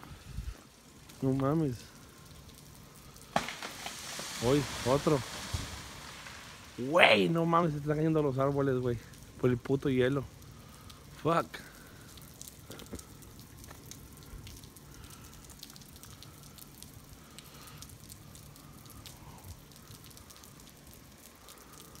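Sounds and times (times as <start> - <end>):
freezing rain hiss: 0.0 - 22.0
ice ticking on surfaces: 1.0 - 7.2.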